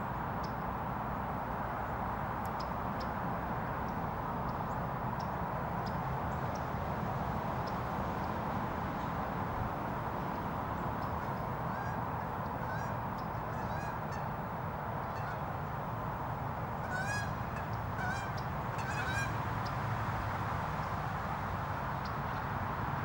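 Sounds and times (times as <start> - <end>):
birds calling: 10.7 - 14.4, 15.0 - 15.5, 16.8 - 19.8.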